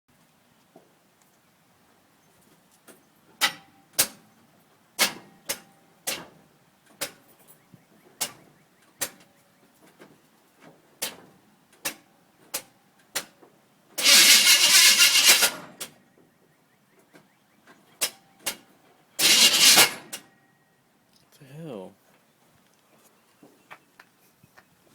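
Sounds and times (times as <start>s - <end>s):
loud rough engine burst: 14.0s - 15.7s.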